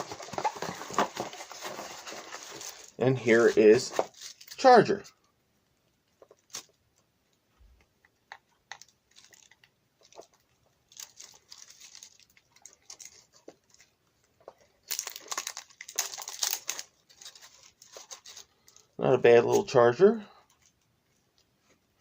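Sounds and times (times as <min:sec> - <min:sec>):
packaging crinkling: 0:00.0 - 0:04.7, 0:08.7 - 0:18.9.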